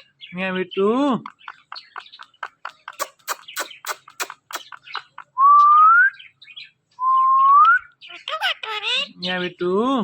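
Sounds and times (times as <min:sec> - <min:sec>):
parrot chattering: 0:01.2 - 0:05.4, 0:08.0 - 0:09.6.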